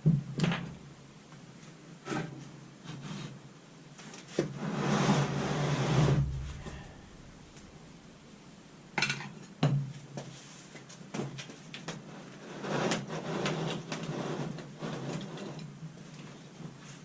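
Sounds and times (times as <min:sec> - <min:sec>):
metal scraping: 0:04.6 - 0:07.8
sharp knocks: 0:05.9 - 0:07.7.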